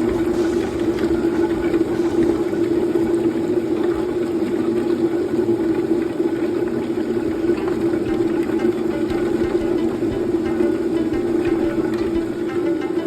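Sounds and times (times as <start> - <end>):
peeling machine running: 0.0 - 4.2.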